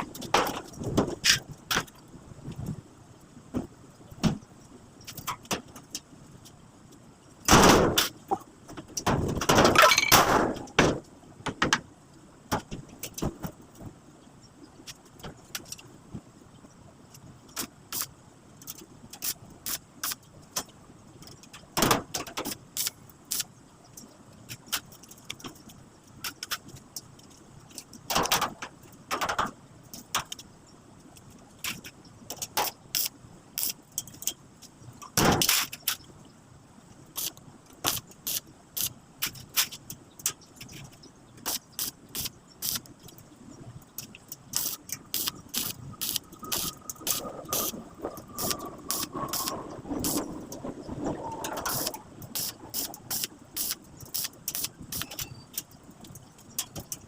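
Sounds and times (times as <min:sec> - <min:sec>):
metal parts clanking: 0:09.2 - 0:10.7.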